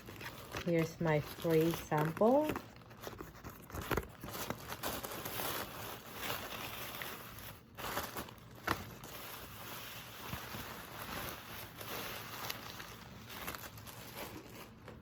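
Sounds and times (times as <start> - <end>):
tissue paper rustling: 0.0 - 15.0.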